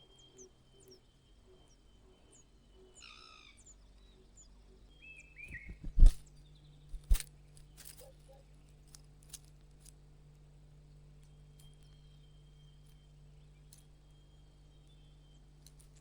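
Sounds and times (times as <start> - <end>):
bird chirps: 0.0 - 8.8.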